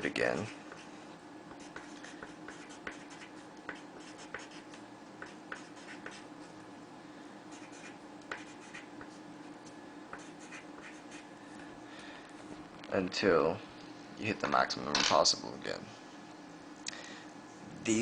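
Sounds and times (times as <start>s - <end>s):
pen scratching handwriting: 1.5s - 6.3s, 7.5s - 9.2s, 10.2s - 11.2s.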